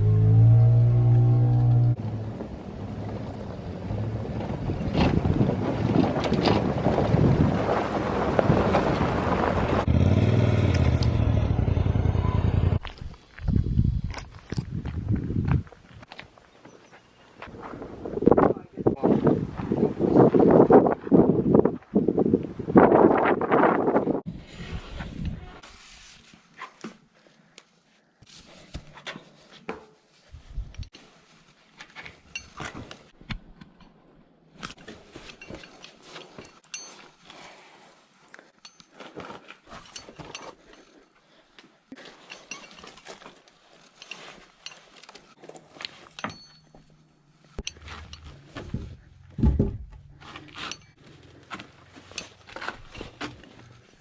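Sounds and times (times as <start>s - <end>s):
low steady hum: 0.0s - 2.4s
loud thump: 49.4s - 50.0s.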